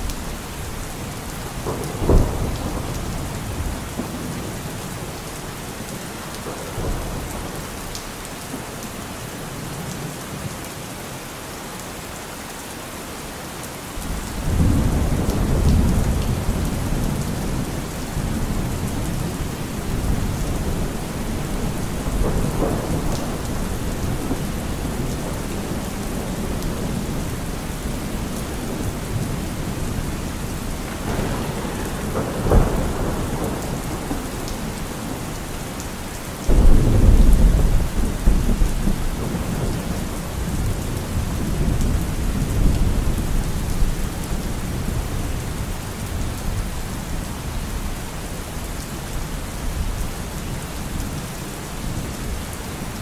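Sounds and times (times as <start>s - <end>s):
thunder rumbling: 0.0s - 8.0s, 14.0s - 48.0s
steady rain falling: 0.0s - 53.0s
sharp thunder clap: 1.6s - 4.5s, 14.0s - 35.6s, 36.5s - 43.4s.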